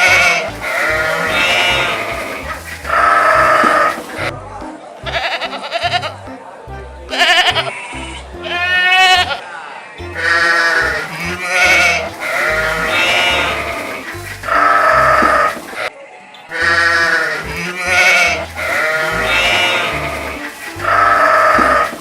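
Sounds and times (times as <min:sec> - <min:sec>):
backing music with bass line: 0:00.0 - 0:09.4, 0:10.0 - 0:15.8, 0:16.6 - 0:22.0
sheep bleating: 0:05.0 - 0:06.2, 0:07.1 - 0:09.4, 0:10.1 - 0:13.9, 0:16.5 - 0:21.6.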